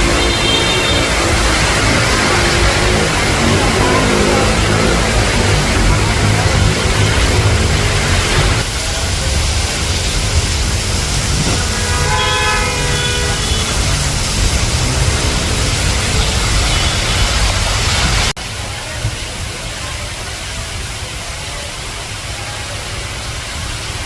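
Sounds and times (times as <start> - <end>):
vehicle horn: 0.0 - 8.6, 11.4 - 18.1
heavy rain: 0.0 - 24.0
street traffic rumble: 0.0 - 24.0
wind on microphone: 10.3 - 12.0.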